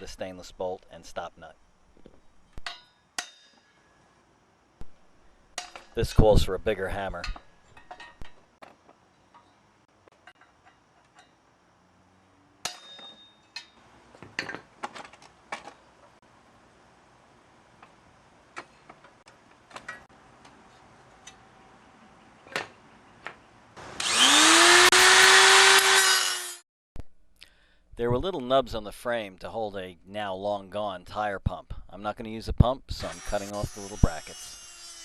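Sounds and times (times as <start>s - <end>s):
power tool running: 23.8s - 26.6s.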